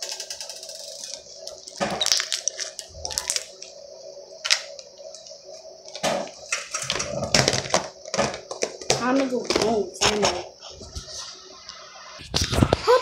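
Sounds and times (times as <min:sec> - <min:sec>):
crunchy slime crackling: 0:00.9 - 0:10.4.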